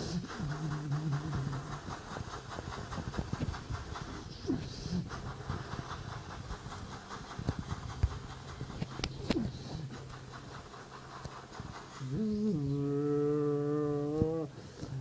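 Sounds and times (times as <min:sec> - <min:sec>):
person panting: 0:00.0 - 0:15.0
held wavering vocal note: 0:12.1 - 0:14.6.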